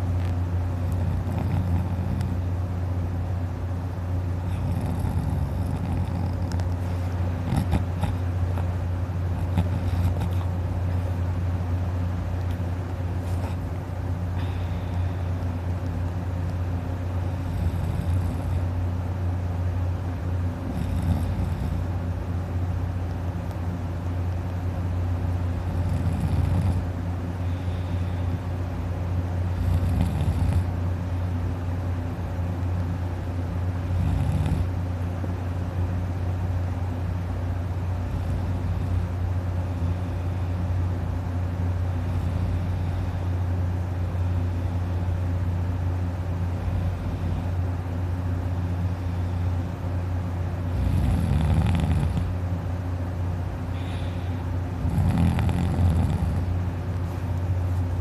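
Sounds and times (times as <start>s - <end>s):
steady low hum: 0.0s - 58.0s
man snoring loudly: 0.8s - 2.5s, 4.4s - 6.7s, 7.4s - 8.2s, 9.3s - 10.5s, 17.3s - 18.7s, 20.6s - 21.9s, 25.6s - 26.9s, 29.5s - 30.7s, 33.8s - 34.8s, 38.0s - 39.1s, 50.7s - 52.4s, 53.7s - 56.6s.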